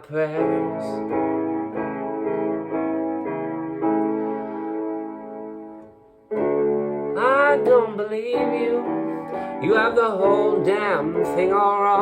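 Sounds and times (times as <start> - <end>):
piano playing chords: 0.0 - 12.0.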